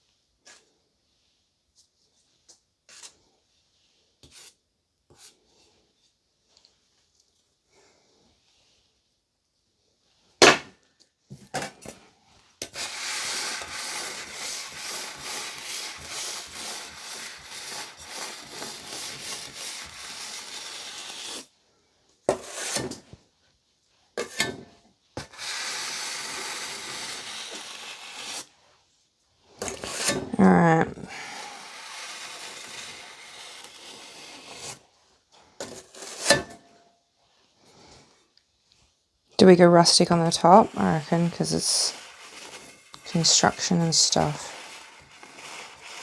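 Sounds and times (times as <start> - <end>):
spatula scraping buttercream: 2.2 - 6.1, 12.6 - 21.6, 22.3 - 23.2, 25.2 - 28.8, 29.5 - 36.6, 39.4 - 46.0.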